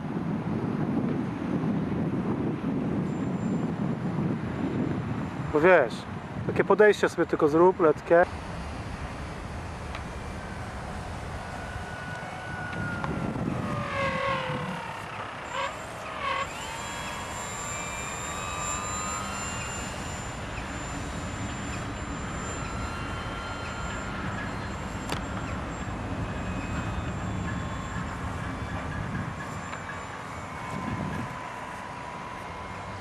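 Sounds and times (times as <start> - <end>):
steady background noise: 0.0 - 33.0
model glider motor whining: 7.6 - 33.0.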